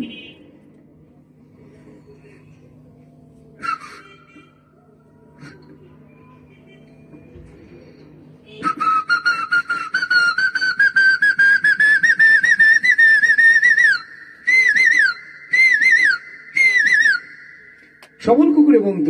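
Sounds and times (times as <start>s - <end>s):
man whistling bird call: 3.6s - 4.5s, 8.6s - 18.1s.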